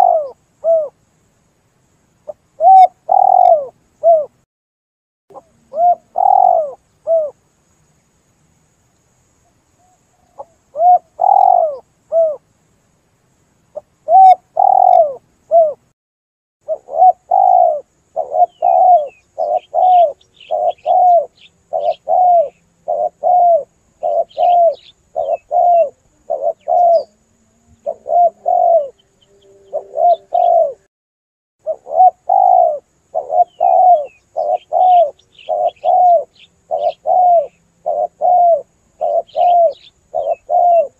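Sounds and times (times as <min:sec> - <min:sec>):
dove cooing: 0:00.0 - 0:01.0, 0:02.3 - 0:04.4, 0:05.3 - 0:07.4, 0:10.2 - 0:12.4, 0:13.8 - 0:15.8, 0:16.7 - 0:30.9, 0:31.6 - 0:40.9
small birds chirping: 0:00.0 - 0:04.4, 0:05.3 - 0:15.9, 0:16.6 - 0:30.9, 0:31.6 - 0:40.9.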